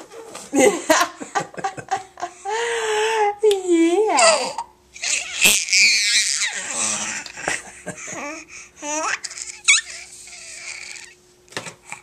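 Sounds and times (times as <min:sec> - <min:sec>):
baby laughing and babbling: 0:03.7 - 0:07.3, 0:08.0 - 0:11.2
baby squealing: 0:04.2 - 0:06.9, 0:08.9 - 0:11.2.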